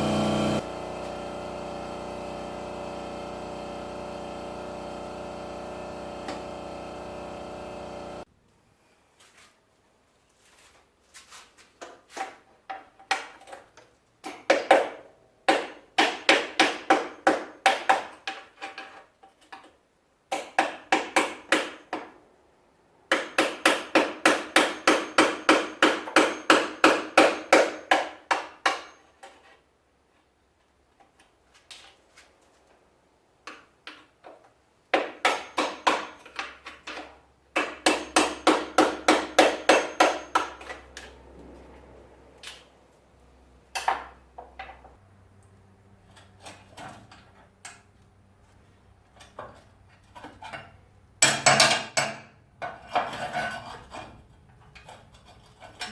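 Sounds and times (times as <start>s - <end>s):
hammer striking metal: 23.1s - 29.0s, 37.6s - 40.8s.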